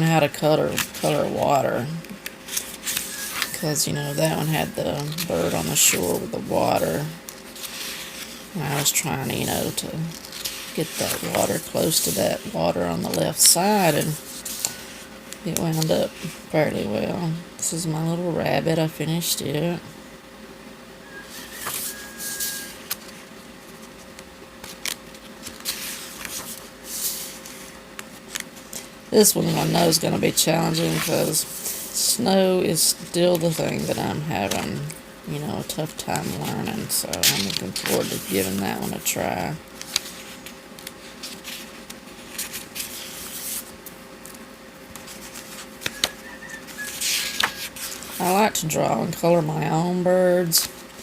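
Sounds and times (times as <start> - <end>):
paper pages swishing: 2.5 - 6.2, 7.4 - 8.8, 9.4 - 12.5, 14.0 - 15.1, 21.3 - 23.2, 23.8 - 30.0, 30.7 - 32.2, 39.8 - 48.3.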